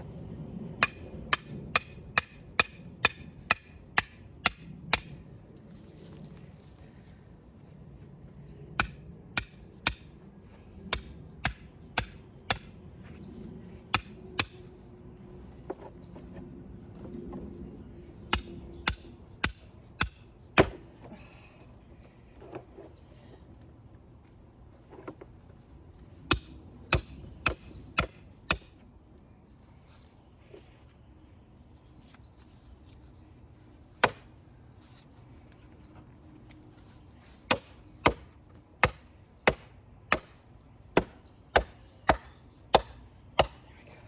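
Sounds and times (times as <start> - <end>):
hammer striking metal anchors: 0.8 - 5.1, 10.9 - 12.7.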